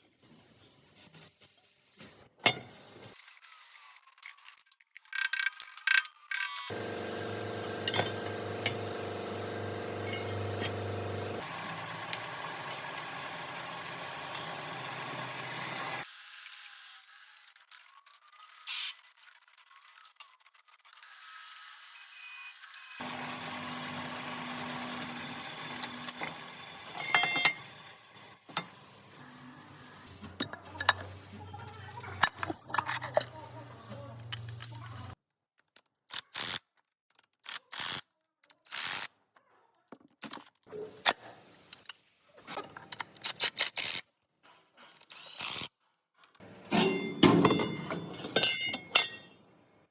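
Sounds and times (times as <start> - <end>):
hand tools clinking on metal: 6.7 - 16.0, 24.5 - 29.1, 30.0 - 35.0, 46.4 - 49.4.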